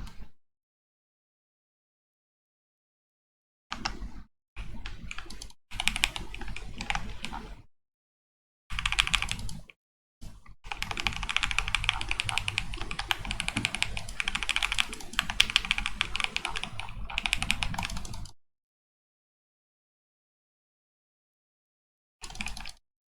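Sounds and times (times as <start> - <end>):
mechanical keyboard typing: 4.9 - 7.5, 8.7 - 9.7, 10.7 - 18.4, 22.2 - 22.8.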